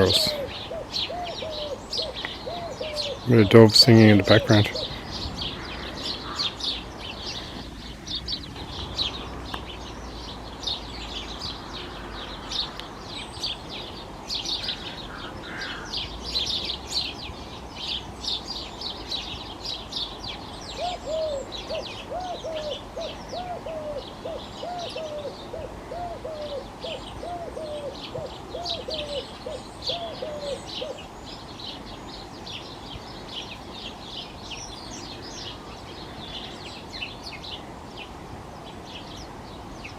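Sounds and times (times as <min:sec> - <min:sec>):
dove cooing: 0:00.0 - 0:12.3, 0:20.7 - 0:31.1
sparrows chirping: 0:00.0 - 0:39.9.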